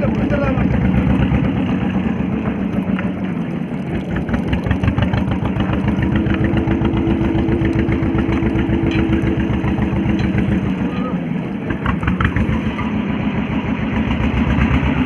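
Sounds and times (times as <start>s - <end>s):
boat engine puttering: 0.0s - 15.0s.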